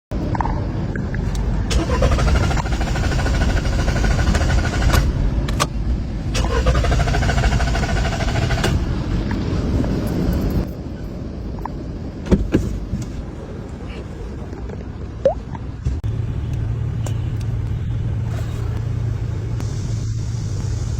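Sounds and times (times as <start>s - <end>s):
starter motor cranking engine: 1.7s - 5.2s, 6.3s - 8.9s.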